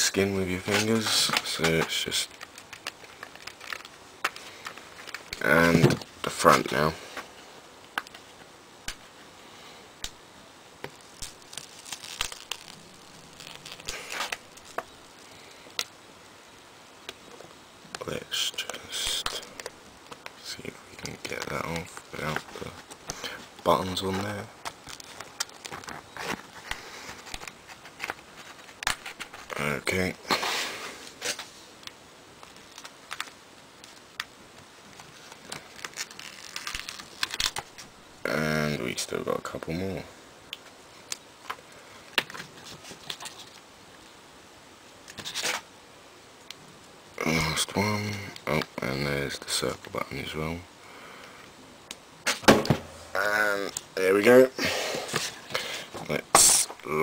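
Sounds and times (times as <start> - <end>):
vinyl crinkling and tearing: 0.1 - 7.3, 10.8 - 16.0, 18.0 - 38.0, 41.0 - 43.7, 45.0 - 45.7
adhesive vinyl peeling: 10.8 - 15.9, 34.9 - 37.9.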